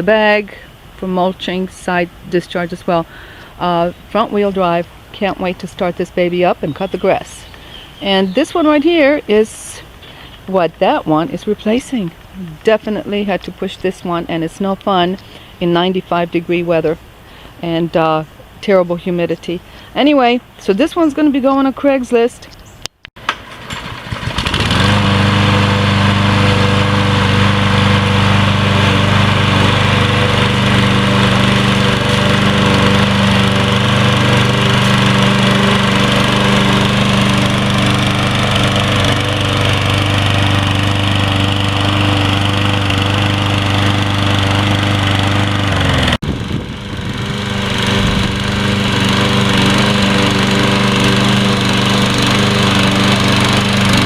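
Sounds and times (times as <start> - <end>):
lawn mower engine running: 23.2 - 54.0.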